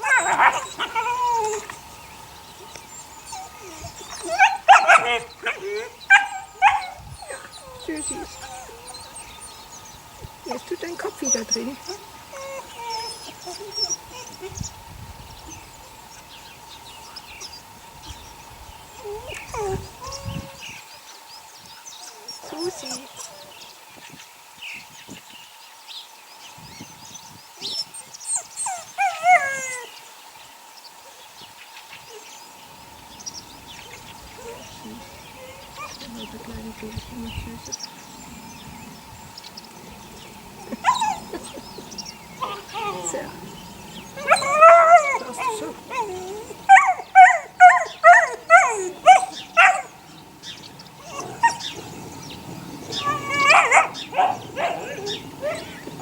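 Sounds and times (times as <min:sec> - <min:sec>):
puppy whine: 0:00.0 - 0:01.9, 0:02.6 - 0:09.5, 0:11.2 - 0:14.7, 0:19.0 - 0:20.8, 0:22.0 - 0:23.6, 0:27.6 - 0:30.0, 0:33.8 - 0:36.1, 0:40.6 - 0:43.4, 0:44.0 - 0:50.0, 0:51.0 - 0:52.0, 0:52.8 - 0:56.0
puppies whimpering: 0:00.0 - 0:14.7, 0:19.0 - 0:20.8, 0:22.0 - 0:23.7, 0:27.6 - 0:30.0, 0:33.8 - 0:37.3, 0:40.2 - 0:56.0.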